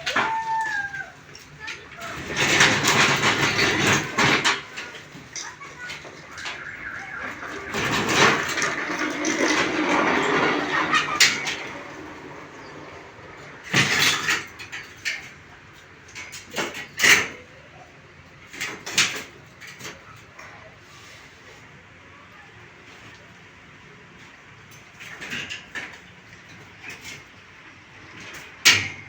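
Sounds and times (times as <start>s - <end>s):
scraping and dragging: 0.0s - 17.0s.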